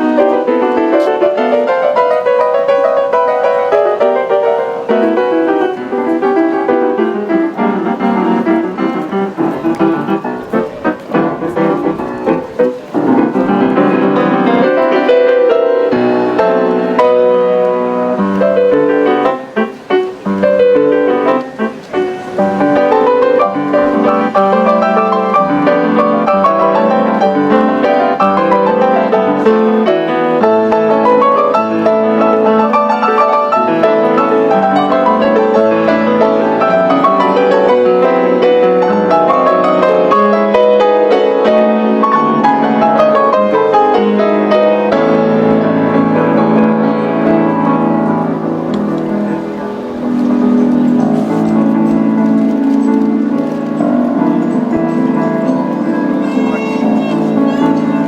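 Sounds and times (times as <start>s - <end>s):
grand piano playing: 0.0s - 58.0s.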